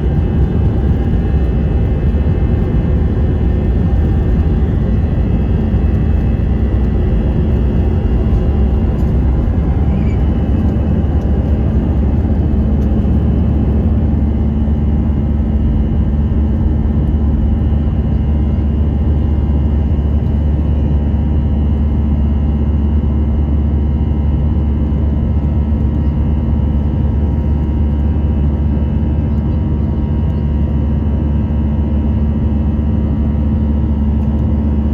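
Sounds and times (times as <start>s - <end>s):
jet engine cabin rumble: 0.0s - 34.9s.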